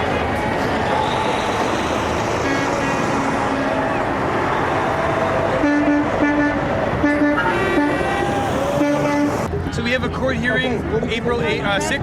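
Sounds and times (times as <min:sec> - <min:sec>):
crowd noise: 0:00.0 - 0:12.0
traffic noise: 0:00.0 - 0:12.0
vehicle horns honking: 0:00.9 - 0:03.8, 0:05.5 - 0:09.5.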